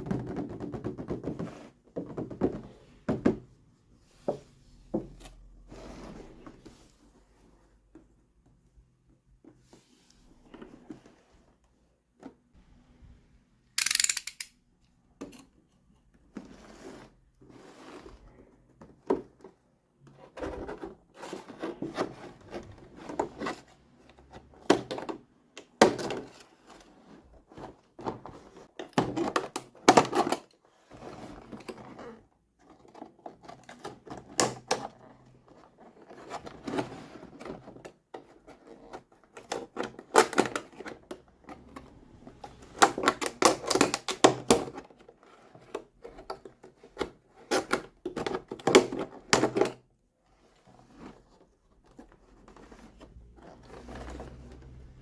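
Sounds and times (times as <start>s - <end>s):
plastic toy pieces clicking: 13.8s - 14.6s.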